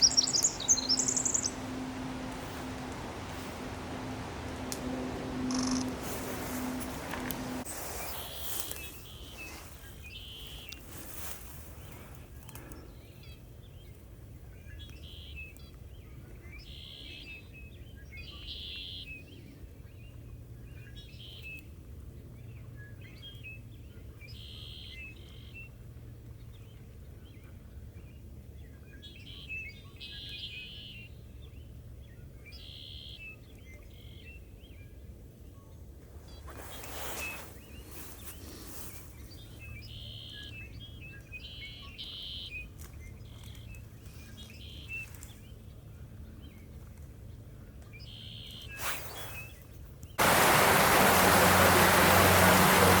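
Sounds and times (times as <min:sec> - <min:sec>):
low background rumble: 0:00.0 - 0:07.7, 0:50.2 - 0:53.0
songbird chips and trills: 0:00.0 - 0:10.9.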